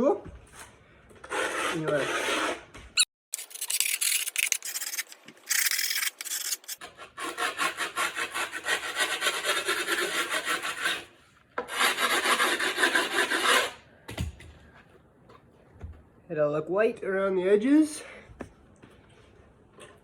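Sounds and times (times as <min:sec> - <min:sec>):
metal tool scraping grip tape: 0:03.3 - 0:08.2.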